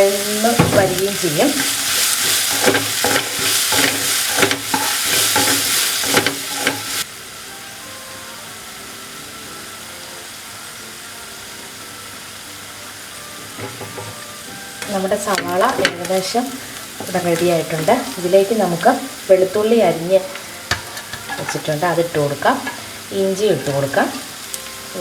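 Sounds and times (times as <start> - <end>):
spatula scraping a pan: 0.0 - 7.0, 13.4 - 24.5
onions sizzling in a pan: 0.0 - 25.0.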